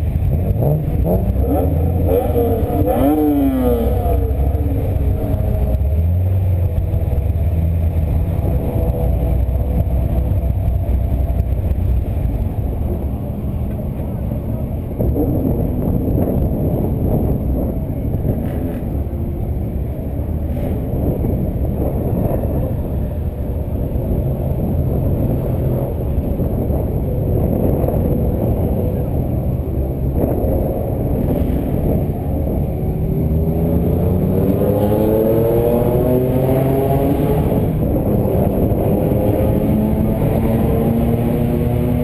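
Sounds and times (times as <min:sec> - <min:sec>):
car engine revving: 0:00.0 - 0:42.0.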